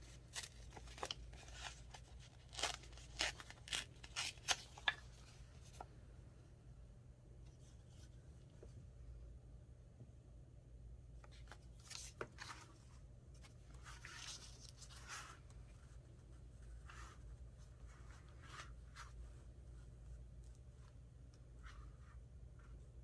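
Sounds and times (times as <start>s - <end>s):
paper rustling: 0.0s - 5.9s, 11.2s - 21.0s.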